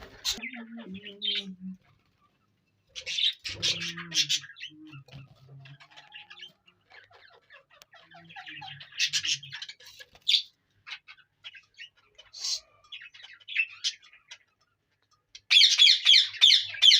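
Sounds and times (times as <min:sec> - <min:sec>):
budgerigars chattering: 0:00.0 - 0:01.6, 0:02.9 - 0:16.9.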